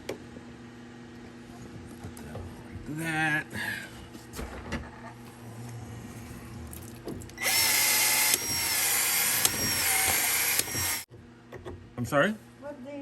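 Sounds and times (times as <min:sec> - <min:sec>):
pipe expansion tool cycling: 0:07.4 - 0:11.0.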